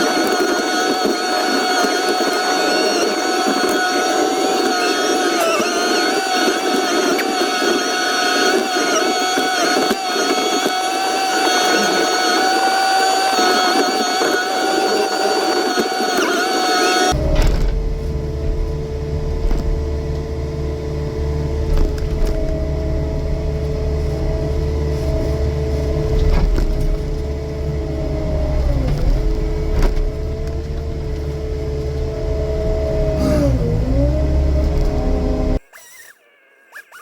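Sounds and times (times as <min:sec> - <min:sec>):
hydraulic mulching head whine: 0:00.0 - 0:36.1
diesel engine rumbling: 0:17.1 - 0:35.6.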